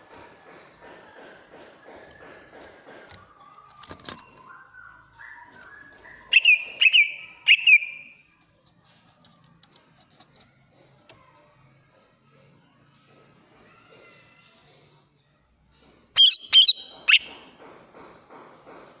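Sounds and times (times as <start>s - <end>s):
bird singing shrill whistles: 3.4s - 8.2s, 16.2s - 17.4s.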